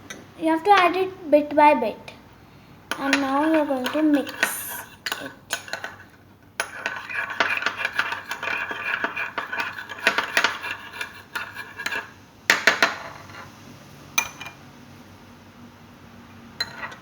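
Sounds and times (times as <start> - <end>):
metal spoon scraping a bowl: 2.9 - 13.5, 16.6 - 17.0.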